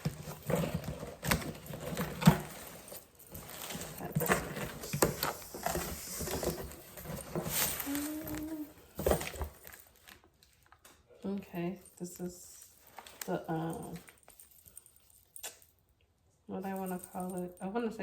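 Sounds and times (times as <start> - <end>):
packaging rustling and crinkling: 0.0 - 11.0, 12.6 - 15.6.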